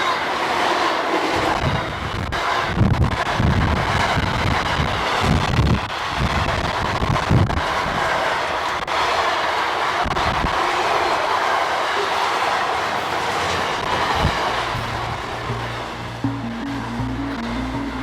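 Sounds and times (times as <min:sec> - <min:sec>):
train wheels rumbling on rail: 0:00.0 - 0:16.2.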